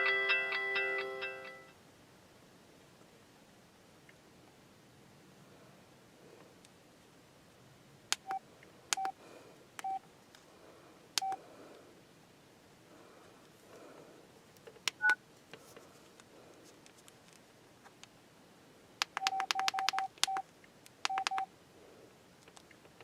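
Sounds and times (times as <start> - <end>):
key beeps: 9.0 - 9.2, 11.2 - 11.4, 19.1 - 20.4, 21.1 - 21.5
phone button clicks: 19.0 - 20.4, 21.1 - 21.5.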